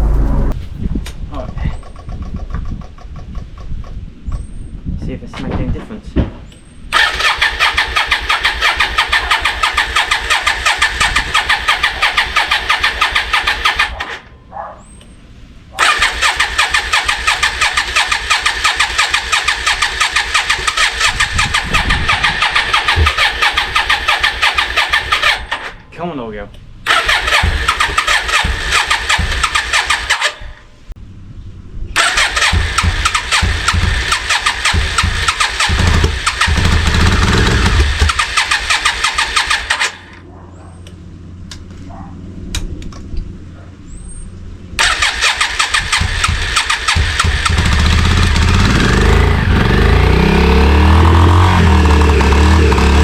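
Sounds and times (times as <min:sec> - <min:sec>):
motorcycle engine running: 0:00.0 - 0:00.8, 0:26.9 - 0:30.2, 0:32.0 - 0:39.8, 0:44.8 - 0:53.0
electric starter cranking engine: 0:06.9 - 0:14.0, 0:15.8 - 0:25.8, 0:26.8 - 0:30.4, 0:32.0 - 0:40.2, 0:44.8 - 0:53.0.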